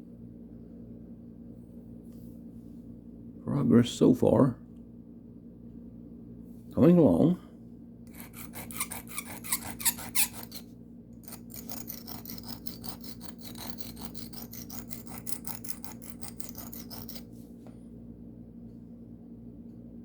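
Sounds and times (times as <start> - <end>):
knife scraping on sharpening stone: 8.1 - 10.6, 11.2 - 17.3.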